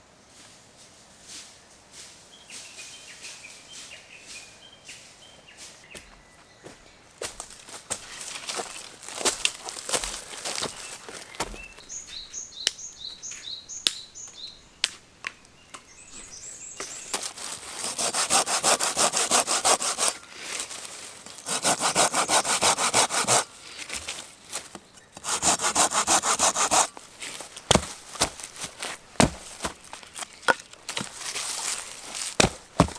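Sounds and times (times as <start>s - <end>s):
hand saw cutting wood: 16.8s - 32.9s.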